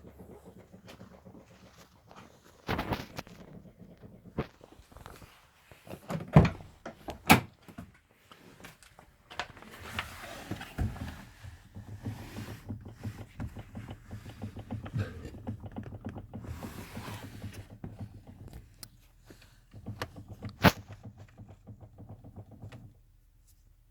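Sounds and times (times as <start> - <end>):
steering knocks and clunks: 5.9 - 8.0, 9.0 - 23.1.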